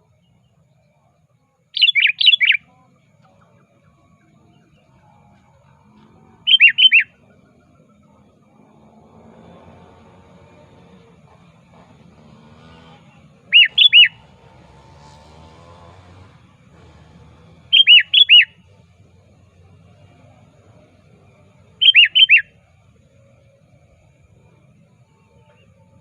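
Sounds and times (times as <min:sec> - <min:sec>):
bird calling loudly: 0:01.8 - 0:02.7, 0:03.4 - 0:08.1, 0:13.0 - 0:14.5, 0:17.5 - 0:18.6, 0:21.7 - 0:22.6.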